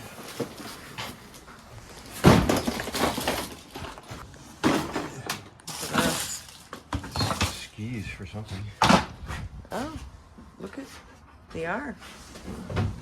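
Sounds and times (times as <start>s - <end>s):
hard objects clattering together: 2.0s - 7.7s.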